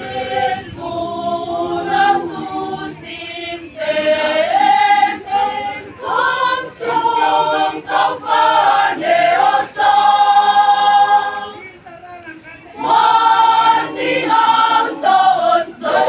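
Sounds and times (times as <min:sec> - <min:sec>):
choir singing: 0:00.0 - 0:11.7, 0:12.7 - 0:16.0.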